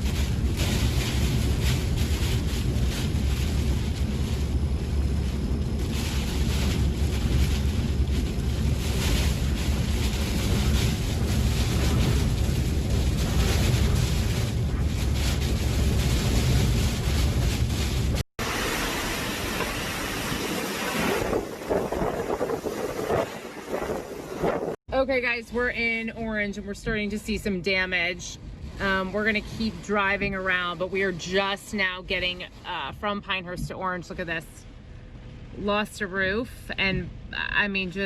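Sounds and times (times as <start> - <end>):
wind buffeting microphone: 0.0 - 24.8.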